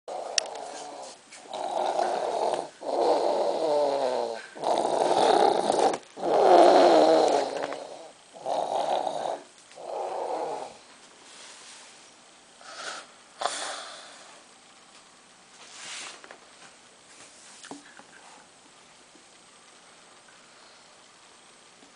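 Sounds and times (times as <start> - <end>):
loud snoring: 0.1 - 10.8
quiet breathing: 7.2 - 14.5, 20.3 - 21.1.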